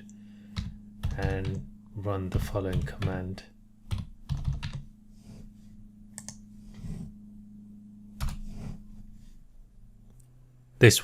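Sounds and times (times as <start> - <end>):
low steady hum: 0.0 - 11.0
computer keyboard keystrokes: 3.9 - 4.8, 6.2 - 6.4.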